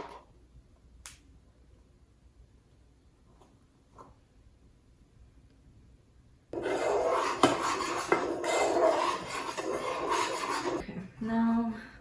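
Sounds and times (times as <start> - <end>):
utensil scraping around a bowl: 6.6 - 10.8.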